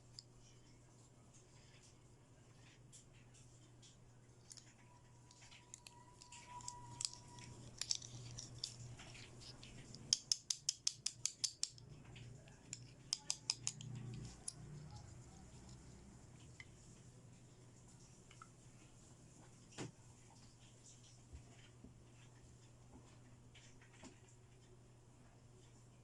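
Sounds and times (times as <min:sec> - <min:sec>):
toy clicks and rustles: 0:02.9 - 0:16.0.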